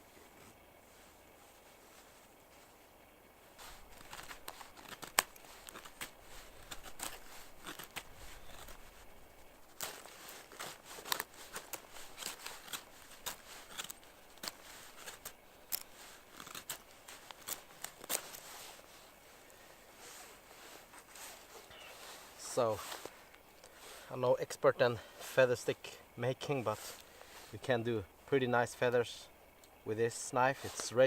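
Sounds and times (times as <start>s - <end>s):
knife scraping wood: 3.6s - 24.1s
sharp wood crack: 3.7s - 18.4s.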